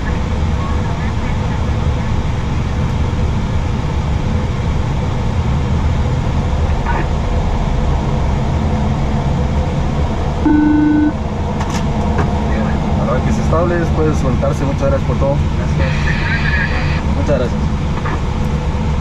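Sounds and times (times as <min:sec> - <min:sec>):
cockpit low rumble: 0:00.0 - 0:19.0
short electronic tone: 0:10.4 - 0:11.2.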